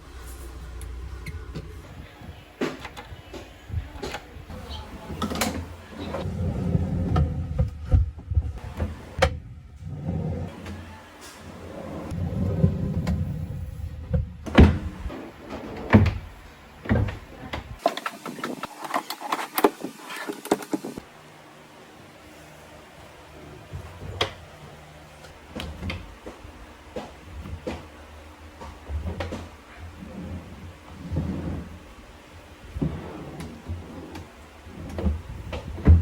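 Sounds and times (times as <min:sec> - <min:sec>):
drawers rumbling on metal slides: 0:01.3 - 0:21.0, 0:28.8 - 0:36.0.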